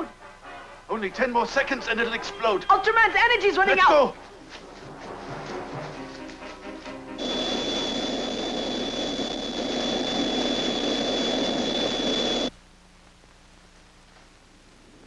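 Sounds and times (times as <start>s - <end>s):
music: 0.0s - 7.2s
jet engine roar with whistle: 7.2s - 12.5s.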